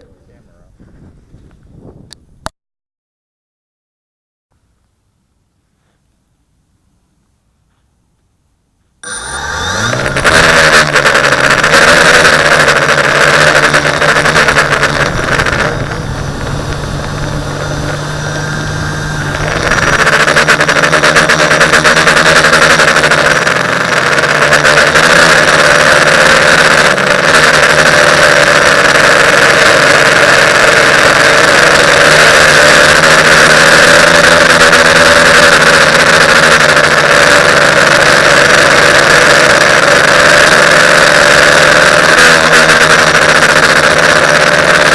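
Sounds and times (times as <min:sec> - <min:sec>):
drone propellers buzzing: 0:09.0 - 0:44.9.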